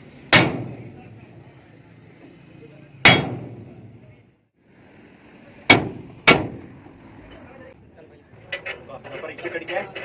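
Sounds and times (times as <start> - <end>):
hammer clanging on steel: 0.3 - 1.1, 3.0 - 3.9.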